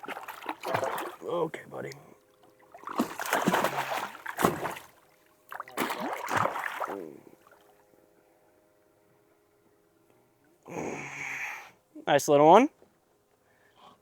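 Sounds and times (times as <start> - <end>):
water splashing: 0.0 - 7.7.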